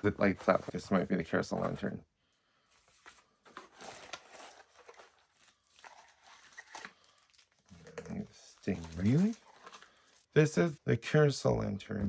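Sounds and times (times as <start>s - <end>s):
packaging rustling and crinkling: 2.7s - 10.3s.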